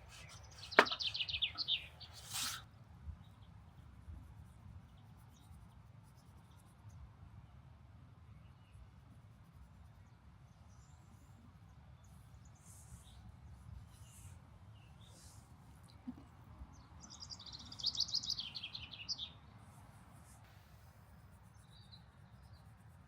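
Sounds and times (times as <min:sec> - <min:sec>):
faint bird chirps: 0:09.5 - 0:19.8.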